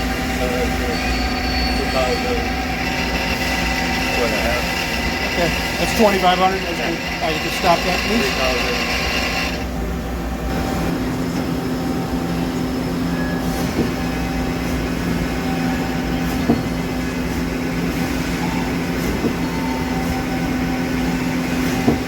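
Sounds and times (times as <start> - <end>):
machine hum: 0.0 - 22.0.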